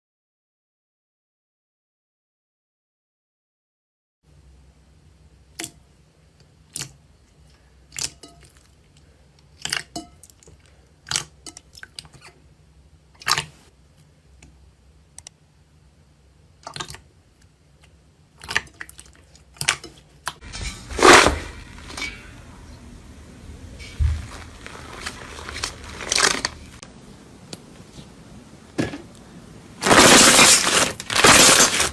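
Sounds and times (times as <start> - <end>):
slime popping and crackling: 29.8 - 31.9.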